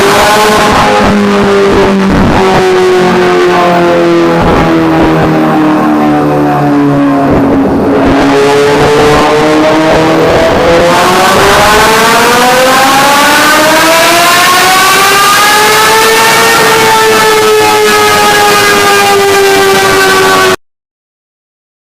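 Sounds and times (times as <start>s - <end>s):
motorcycle engine running hard: 0.0s - 12.6s.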